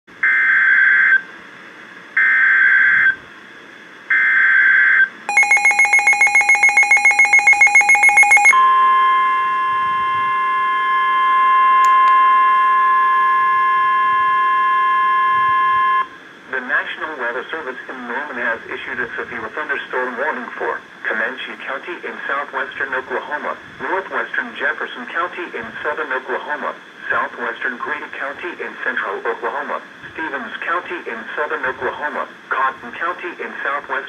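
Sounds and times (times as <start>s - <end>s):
steady warning alarm tone: 4.1s - 11.7s
rapid beeping: 5.3s - 8.6s.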